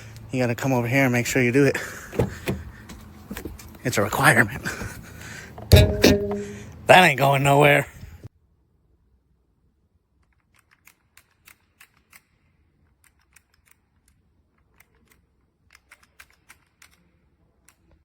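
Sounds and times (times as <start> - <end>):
ratchet strap clicks: 10.3 - 17.8.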